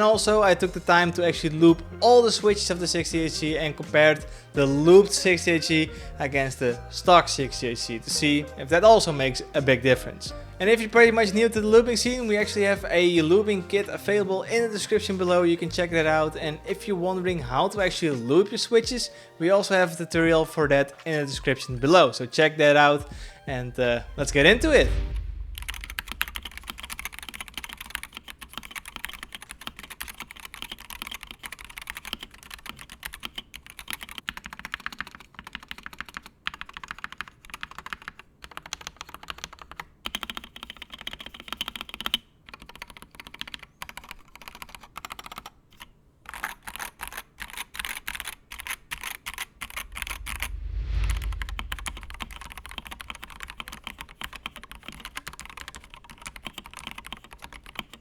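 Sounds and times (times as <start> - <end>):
brief low rumble: 23.5 - 27.6, 49.7 - 53.8
fast keyboard typing: 25.8 - 50.1, 52.2 - 58.0.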